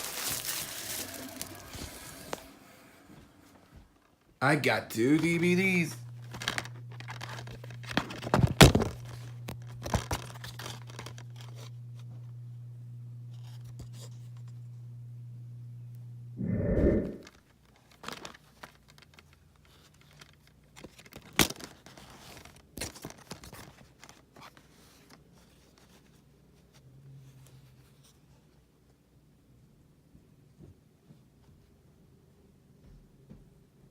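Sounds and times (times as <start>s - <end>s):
plastic shrink-wrap crinkling: 0.0s - 2.4s, 6.1s - 11.8s, 17.7s - 24.2s
steady low hum: 2.4s - 17.3s.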